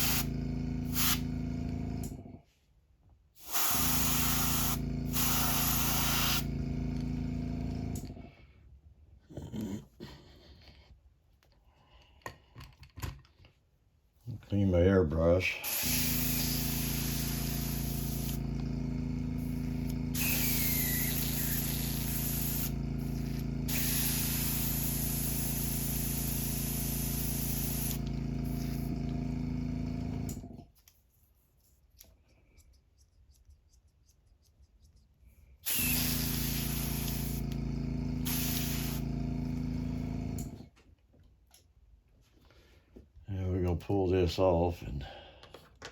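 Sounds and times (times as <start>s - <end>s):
airbrush hissing: 0.0s - 1.4s, 3.4s - 6.6s, 15.5s - 29.0s, 35.6s - 37.6s, 38.2s - 39.2s
compressor humming: 0.0s - 2.4s, 3.4s - 8.6s, 15.5s - 30.7s, 35.6s - 40.8s.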